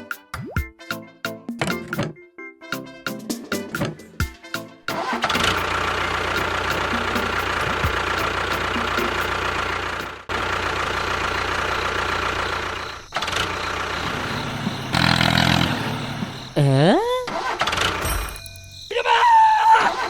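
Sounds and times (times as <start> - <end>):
small engine running: 4.9 - 18.3.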